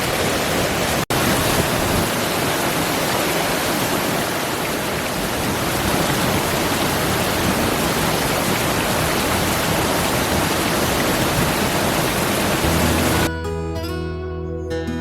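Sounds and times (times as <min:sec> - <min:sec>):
water rushing and splashing: 0:00.0 - 0:13.3
acoustic guitar music: 0:12.6 - 0:15.0.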